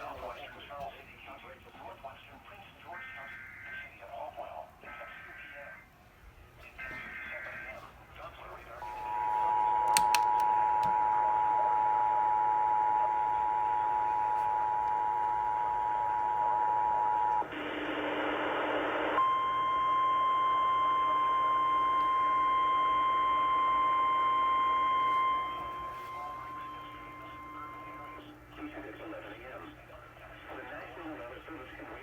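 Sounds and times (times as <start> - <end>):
weather radio alarm tone: 6.6 - 8.0, 8.6 - 28.4
radio static burst: 6.6 - 9.8, 25.8 - 32.0
two-tone attention signal: 8.8 - 17.4, 19.2 - 28.2.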